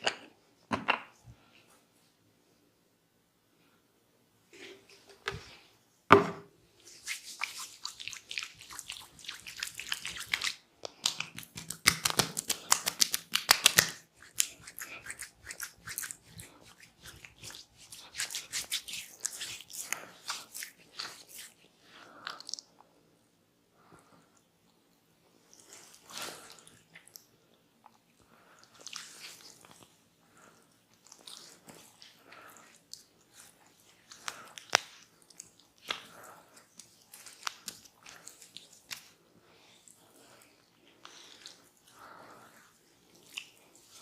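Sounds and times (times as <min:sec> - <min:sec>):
hands rubbing skin and hair: 0:06.8 - 0:22.6, 0:28.7 - 0:30.0, 0:31.1 - 0:39.2.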